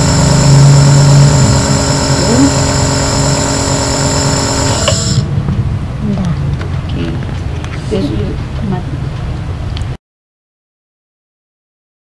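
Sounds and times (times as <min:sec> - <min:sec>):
compressor nebulizer humming: 0:00.0 - 0:05.3.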